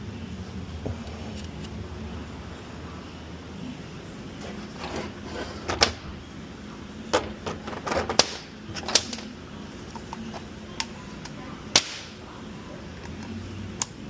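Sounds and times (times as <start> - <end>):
steady low hum: 0.0 - 14.0
metal tools clanking: 4.4 - 6.0, 7.1 - 9.3.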